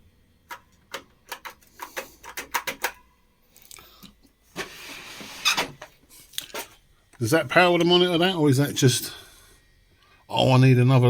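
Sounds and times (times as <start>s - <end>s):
clicks of cables and plugs: 0.5s - 3.0s.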